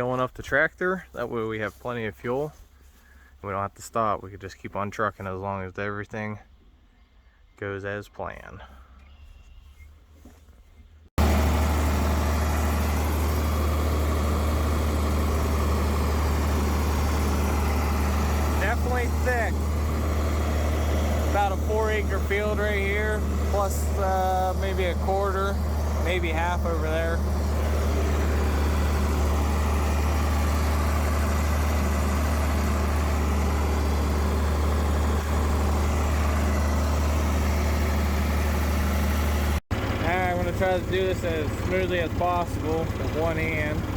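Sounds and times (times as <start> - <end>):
tractor engine running: 11.2 - 43.9.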